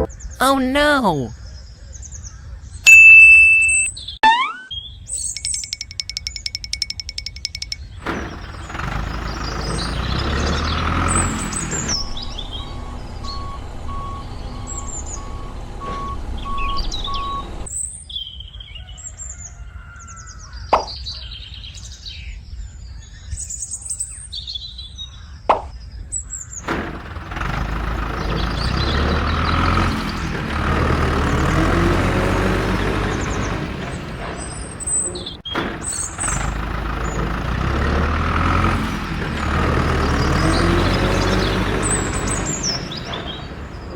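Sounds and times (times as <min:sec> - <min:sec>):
birds chirping: 0:00.0 - 0:18.9, 0:25.1 - 0:43.9
sharp clicks: 0:05.3 - 0:08.3.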